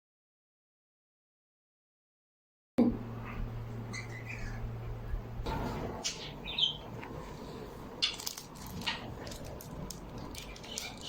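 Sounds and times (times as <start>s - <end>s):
low steady hum: 2.8s - 11.0s
small bird chirping: 3.9s - 4.7s, 6.0s - 6.9s
scattered clicks and rustles: 8.0s - 11.0s.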